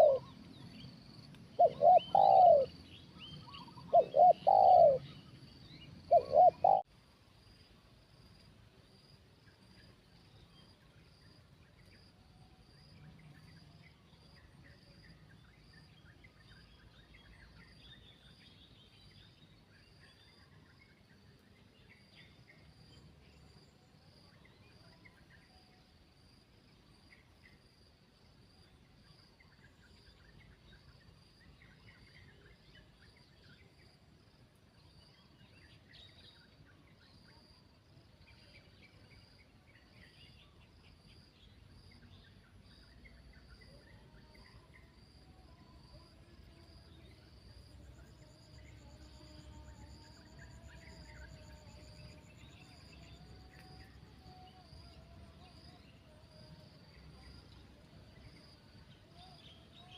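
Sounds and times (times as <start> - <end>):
dove cooing: 0.0 - 0.3, 1.6 - 2.8, 3.6 - 5.1, 6.1 - 6.9
small birds chirping: 0.0 - 6.9
insect chirring: 45.0 - 59.9.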